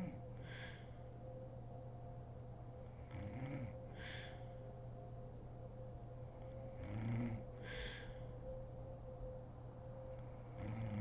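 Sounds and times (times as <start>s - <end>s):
woman snoring: 0.0s - 0.2s, 3.1s - 3.8s, 6.8s - 7.4s, 10.6s - 11.0s
steady low hum: 0.0s - 11.0s
breathy exhale: 0.4s - 1.0s, 3.9s - 4.6s, 7.6s - 8.4s.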